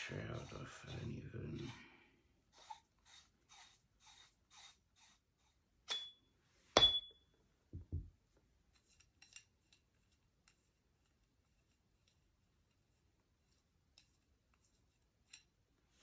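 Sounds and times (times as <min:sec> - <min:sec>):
sharp metallic clinks: 0:05.9 - 0:06.2, 0:06.8 - 0:07.2.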